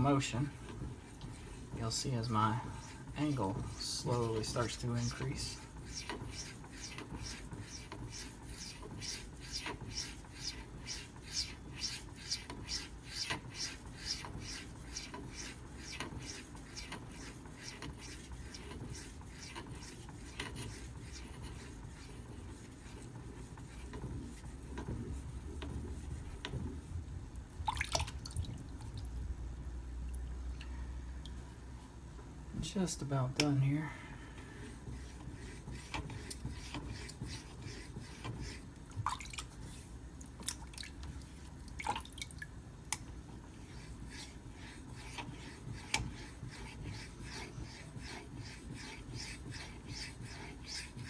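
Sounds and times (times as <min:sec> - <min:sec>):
knife scraping on wet whetstone: 0:01.4 - 0:22.3, 0:35.0 - 0:38.7, 0:43.6 - 0:51.0.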